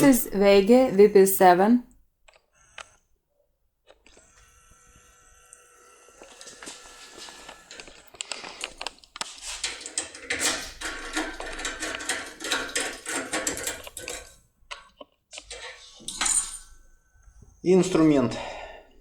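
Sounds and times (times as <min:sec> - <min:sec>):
metal tool clicking and rattling: 0:07.7 - 0:14.4.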